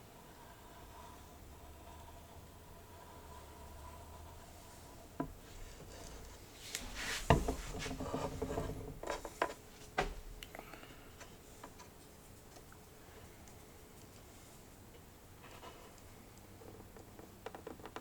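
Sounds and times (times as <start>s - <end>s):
wood rubbing and scraping: 0.0s - 10.4s
wood knocking on workbench: 7.1s - 10.3s.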